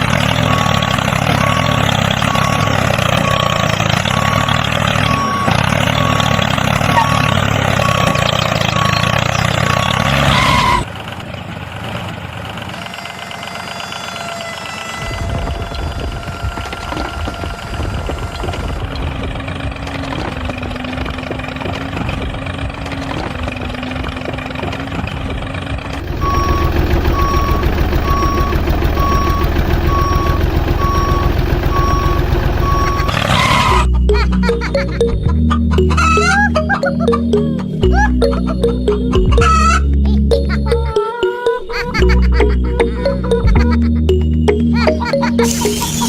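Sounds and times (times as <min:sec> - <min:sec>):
reversing alarm beeping: 0:00.0 - 0:10.9, 0:26.0 - 0:39.7, 0:45.3 - 0:46.0
vehicle engine running: 0:00.0 - 0:36.6.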